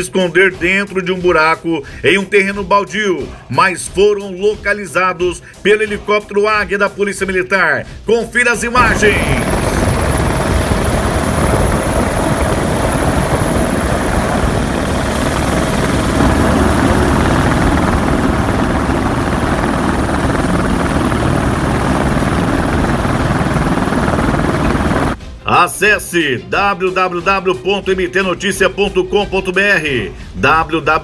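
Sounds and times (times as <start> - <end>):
helicopter rotor and engine: 8.7 - 25.2.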